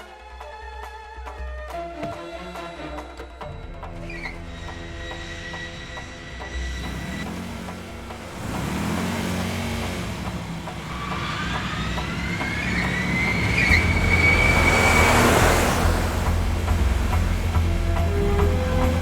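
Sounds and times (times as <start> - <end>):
rushing swell: 6.4 - 19.0
vehicle engine revving: 6.5 - 19.0.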